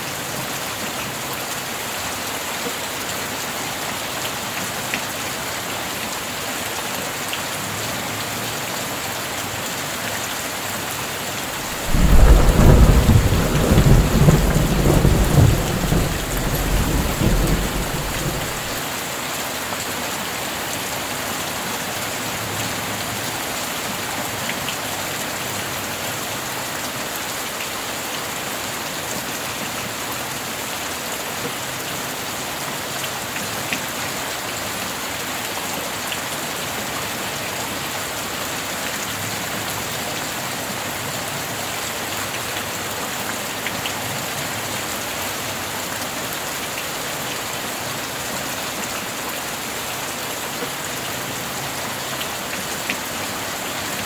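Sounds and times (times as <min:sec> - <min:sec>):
heavy rain falling: 0:10.6 - 0:19.0
thunder rumbling: 0:11.6 - 0:18.8
raindrop ticks: 0:11.7 - 0:18.8.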